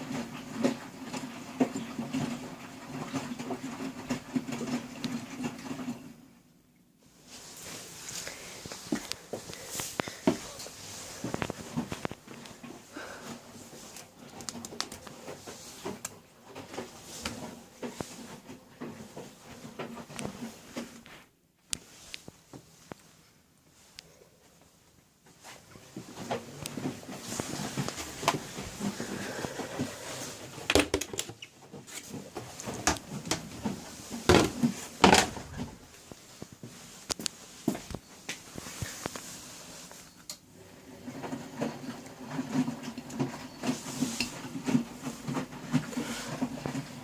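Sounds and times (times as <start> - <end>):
washing machine hum: 0.0 - 47.0
washing machine knocks and clunks: 34.2 - 35.4.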